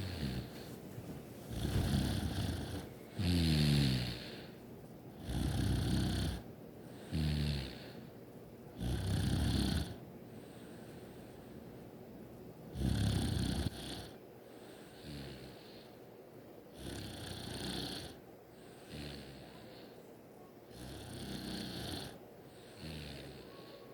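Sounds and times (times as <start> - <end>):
person snoring: 1.5 - 4.5.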